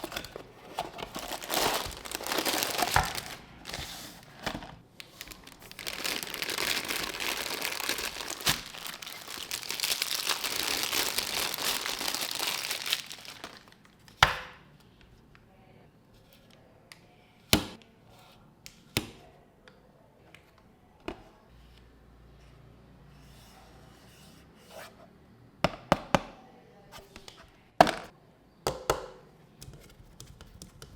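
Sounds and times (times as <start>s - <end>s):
packaging crinkling and tearing: 0.0s - 14.0s.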